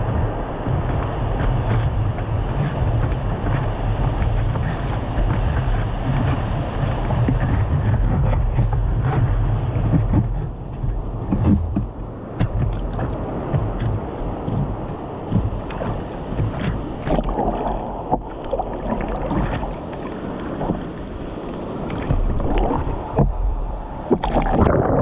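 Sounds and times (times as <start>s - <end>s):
low rumbling noise: 0.0s - 25.0s.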